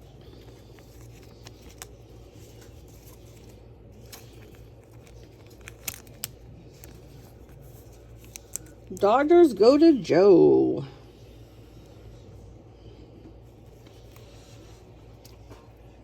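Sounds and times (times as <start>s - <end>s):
wrappers rustling: 0.0s - 9.2s.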